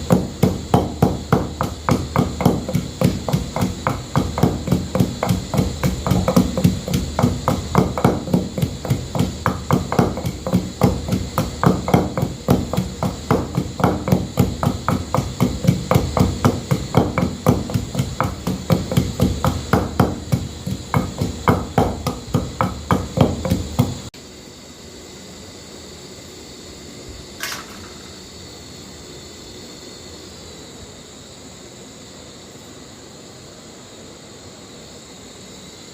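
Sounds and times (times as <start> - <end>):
knocking of food being chopped: 0.0 - 24.1.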